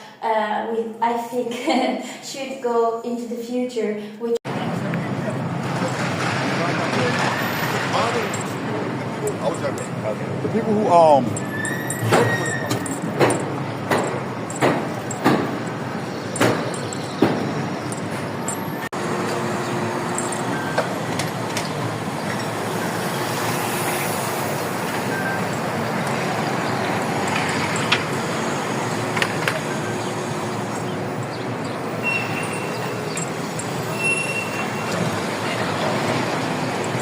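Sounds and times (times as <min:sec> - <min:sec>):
vehicle engine rumble: 0:04.5 - 0:37.0
short high squeals: 0:11.4 - 0:13.0, 0:32.0 - 0:33.3, 0:33.9 - 0:35.0.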